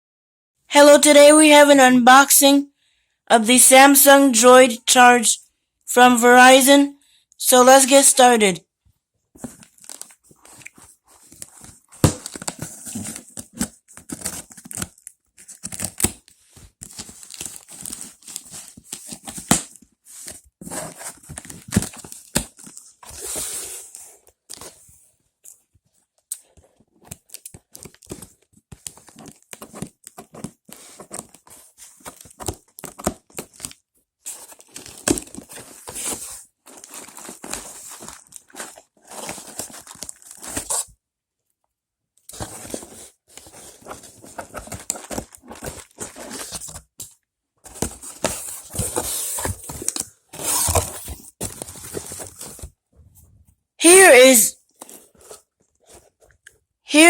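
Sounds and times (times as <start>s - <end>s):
packaging tearing and crinkling: 9.6s - 16.2s, 16.8s - 19.8s, 34.4s - 40.9s.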